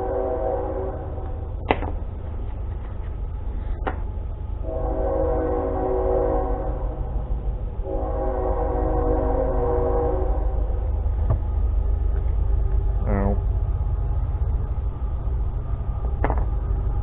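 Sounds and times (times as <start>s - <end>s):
train horn blasts: 0.0s - 1.5s, 4.6s - 7.2s, 7.8s - 10.9s
low rumble: 0.0s - 17.0s.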